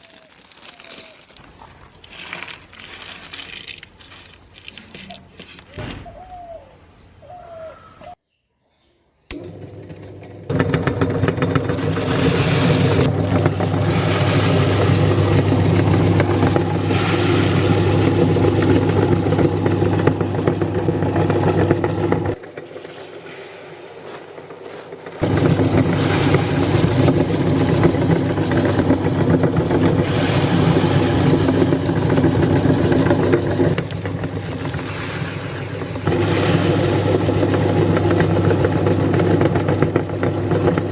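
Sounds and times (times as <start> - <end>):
electric meat grinder running: 9.3 - 22.4, 25.2 - 40.9.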